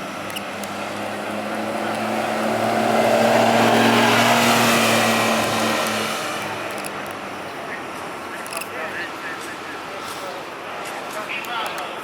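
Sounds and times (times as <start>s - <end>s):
vehicle passing by: 0.0s - 8.2s.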